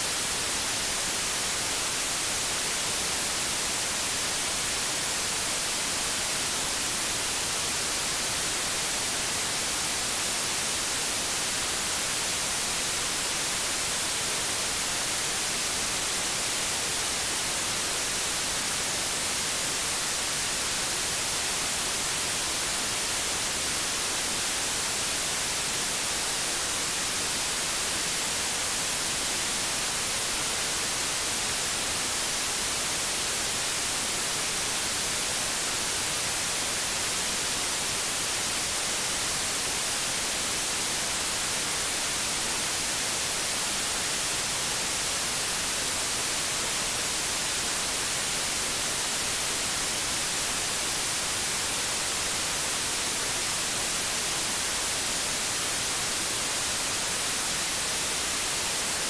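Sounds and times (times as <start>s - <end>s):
white noise hiss: 0.0s - 59.0s.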